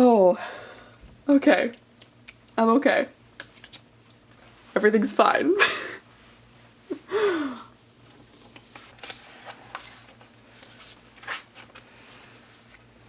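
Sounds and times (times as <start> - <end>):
person sighing: 7.0 - 7.8
paper rustling: 8.1 - 12.9.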